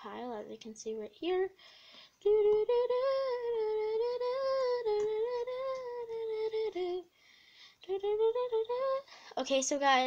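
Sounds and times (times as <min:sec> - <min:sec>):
girl humming: 0:02.2 - 0:07.1.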